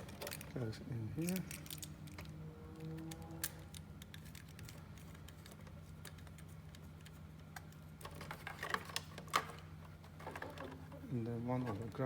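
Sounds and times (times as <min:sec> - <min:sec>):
low hum: 0:00.0 - 0:08.6.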